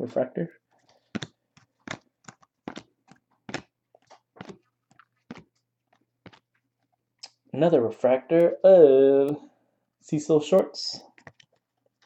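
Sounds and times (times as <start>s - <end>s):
cards clicking and tapping: 0.8s - 6.9s, 11.1s - 12.0s.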